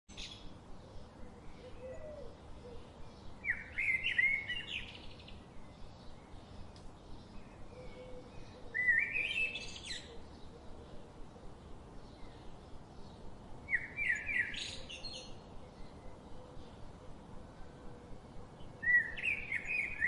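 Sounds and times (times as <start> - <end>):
faint bird calls: 0.2 - 5.4, 7.2 - 11.5.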